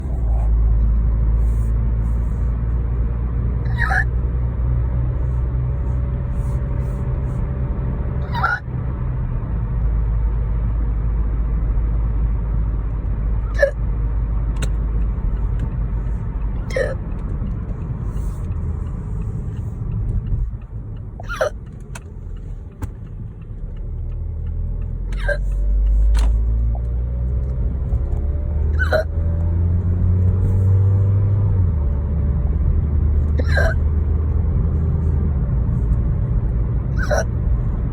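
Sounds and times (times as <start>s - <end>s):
steady low rumble: 0.0s - 37.9s
person hiccuping: 3.7s - 4.1s, 8.2s - 8.7s, 13.5s - 13.8s, 16.6s - 17.0s, 21.2s - 21.6s, 25.1s - 25.5s, 28.8s - 29.2s, 33.4s - 33.8s, 37.0s - 37.4s.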